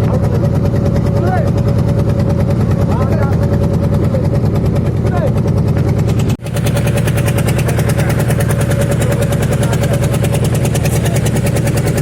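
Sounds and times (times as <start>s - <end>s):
engine chugging: 0.0s - 12.0s.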